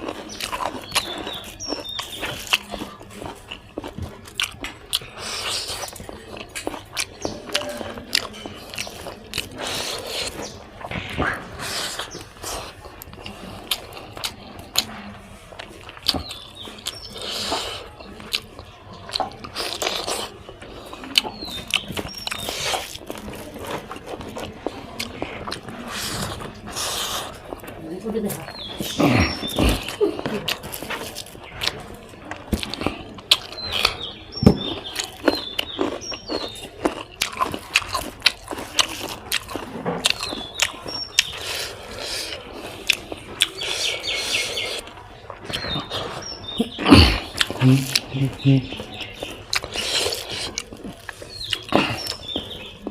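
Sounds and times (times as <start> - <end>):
person chewing food: 0.0 - 52.9
bird chirps: 0.1 - 3.0, 28.2 - 30.3, 33.4 - 37.6, 40.1 - 42.1, 43.4 - 52.9.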